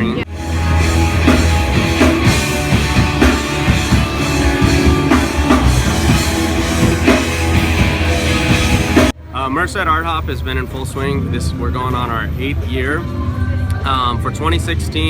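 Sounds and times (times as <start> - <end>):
rock music with drums and guitar: 0.3 - 9.2.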